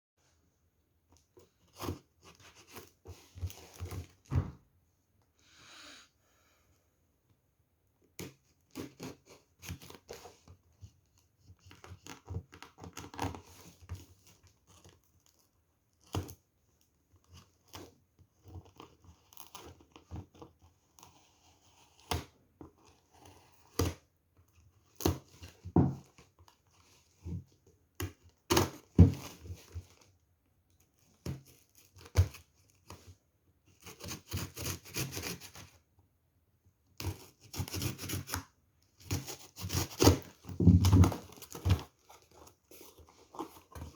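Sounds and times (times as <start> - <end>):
box clicks and knocks: 40.2 - 41.9.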